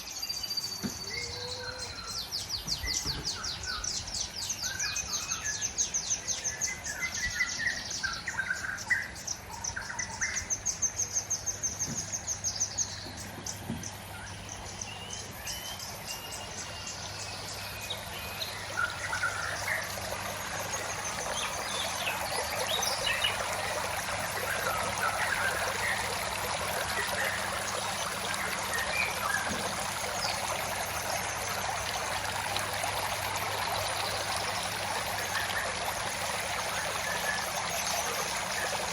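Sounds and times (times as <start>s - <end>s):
running water: 0.0s - 38.9s
birds chirping and calling: 0.8s - 30.6s.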